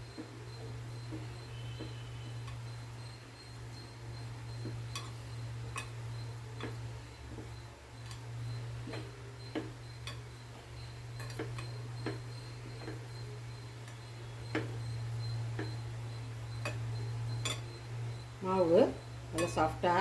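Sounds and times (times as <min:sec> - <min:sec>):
dough kneaded by hand: 0:00.0 - 0:20.0
steady low hum: 0:00.0 - 0:20.0.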